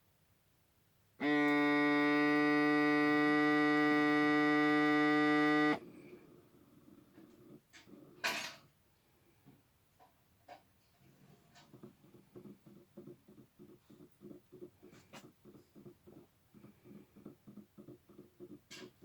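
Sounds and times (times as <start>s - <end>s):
electronic alarm buzzer: 1.2s - 5.8s.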